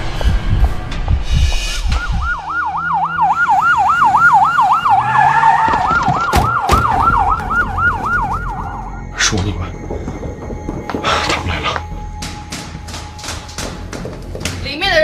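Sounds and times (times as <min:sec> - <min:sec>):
police siren wailing: 0:01.8 - 0:13.9
low thumps: 0:05.8 - 0:15.0.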